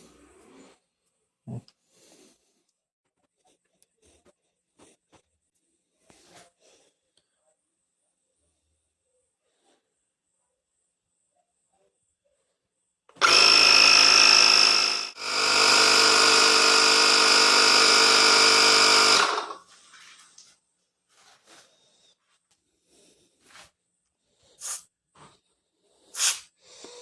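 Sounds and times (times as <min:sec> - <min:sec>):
air compressor buzzing: 0:13.2 - 0:19.6.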